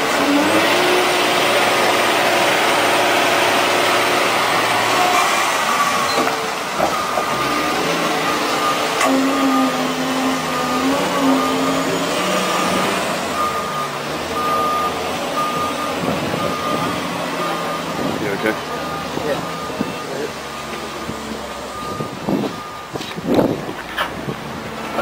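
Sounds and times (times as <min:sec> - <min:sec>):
diesel engine running: 0:00.0 - 0:25.0
reversing alarm beeping: 0:05.7 - 0:20.8, 0:21.6 - 0:23.0.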